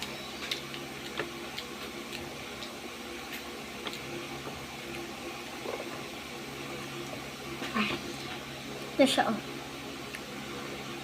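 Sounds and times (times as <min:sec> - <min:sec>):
person chewing sticky food: 0:00.0 - 0:07.4
steady low hum: 0:00.0 - 0:11.0.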